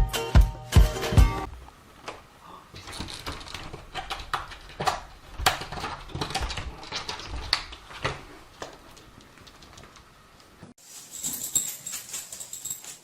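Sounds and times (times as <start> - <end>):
rapid clicks and knocks: 2.9 - 10.1.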